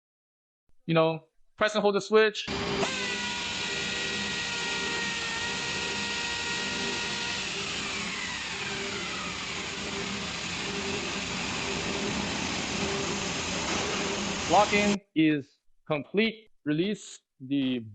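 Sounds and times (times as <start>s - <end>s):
pneumatic wrench air motor whine: 2.5s - 15.0s.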